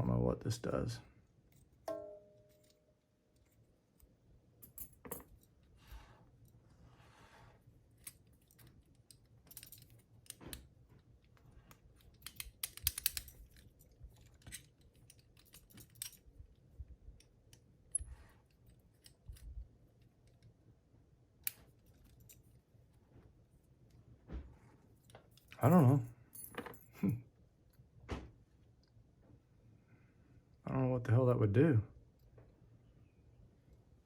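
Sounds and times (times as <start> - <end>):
padlock metal clicks and rattles: 8.0 - 20.6.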